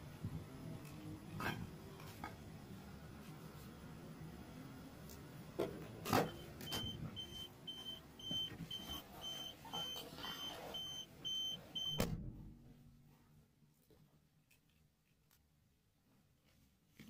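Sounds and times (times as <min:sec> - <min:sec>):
car warning beeper: 0:06.2 - 0:12.1
car door shutting: 0:11.8 - 0:12.3.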